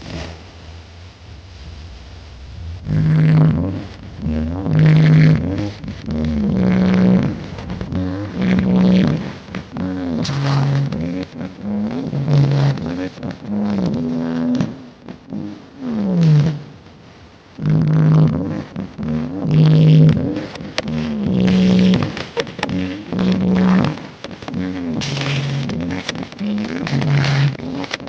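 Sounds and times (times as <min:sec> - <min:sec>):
deep bass: 0:00.0 - 0:12.9.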